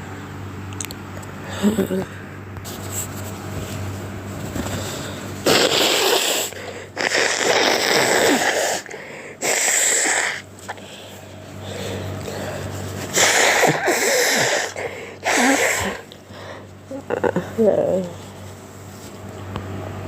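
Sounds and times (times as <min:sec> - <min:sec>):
quiet hum: 0:00.0 - 0:20.0
forceful breaths through nose: 0:04.6 - 0:16.7
person sneezing: 0:05.4 - 0:10.4, 0:13.1 - 0:16.1.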